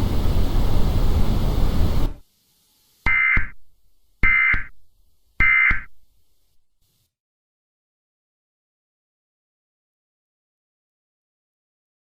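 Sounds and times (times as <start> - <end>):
static hiss: 0.0 - 7.1
digital data tone bursts: 3.1 - 3.6, 4.2 - 4.8, 5.4 - 6.0.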